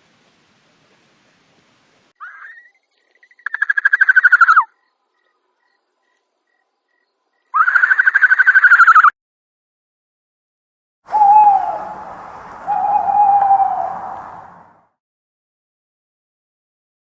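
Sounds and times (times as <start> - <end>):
animal trilling call: 7.6 - 9.1, 11.1 - 14.7.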